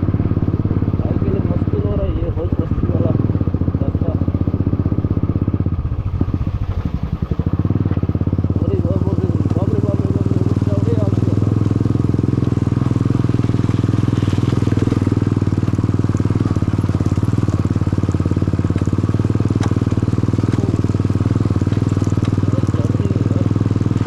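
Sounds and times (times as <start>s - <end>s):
motorcycle exhaust running: 0.0s - 24.0s.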